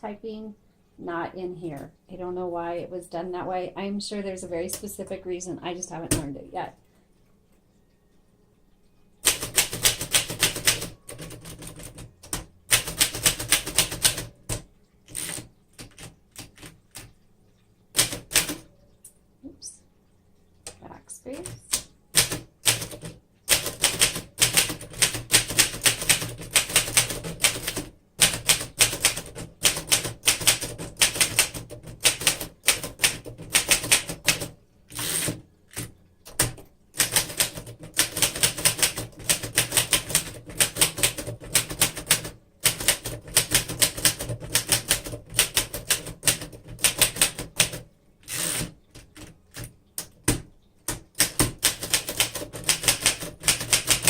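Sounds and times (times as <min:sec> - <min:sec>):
typewriter typing: 0:09.2 - 0:17.1, 0:17.9 - 0:18.6, 0:21.4 - 0:54.0.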